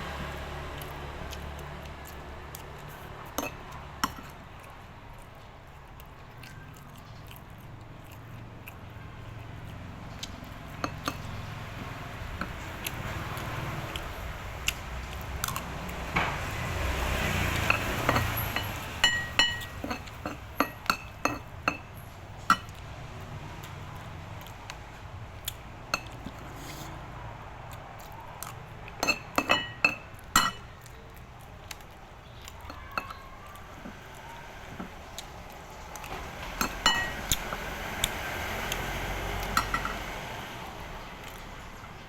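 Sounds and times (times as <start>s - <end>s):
metal utensils clinking on dishes: 2.9s - 4.4s, 10.2s - 13.2s, 17.2s - 22.8s, 29.0s - 31.1s, 32.4s - 35.0s, 36.0s - 37.7s, 39.5s - 40.0s.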